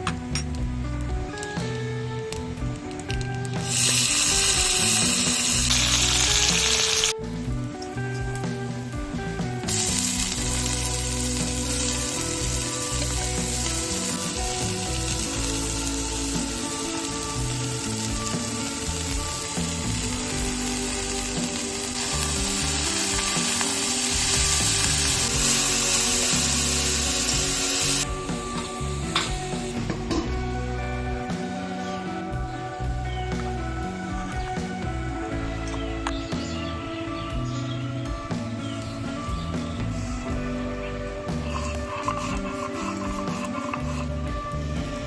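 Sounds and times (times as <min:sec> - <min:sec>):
background music: 0:00.0 - 0:45.0
food sizzling in hot oil: 0:03.6 - 0:07.1, 0:09.7 - 0:28.1.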